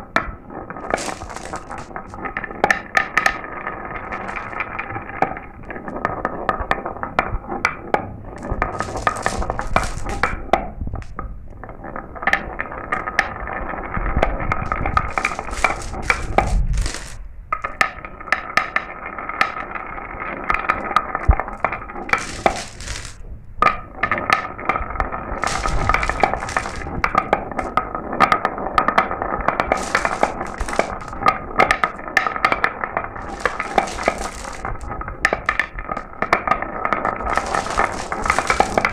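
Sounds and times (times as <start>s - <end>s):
marbles rolling and clicking: 0.5s - 6.4s, 8.3s - 11.2s, 14.2s - 17.9s, 20.5s - 23.2s, 25.3s - 38.9s.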